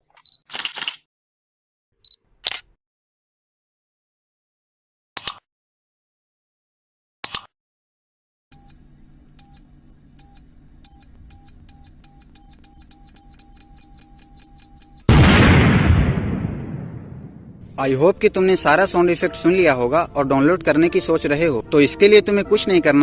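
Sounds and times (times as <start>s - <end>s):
sharp click: 5.2s - 5.5s, 7.2s - 7.5s
loud explosion: 15.1s - 17.8s.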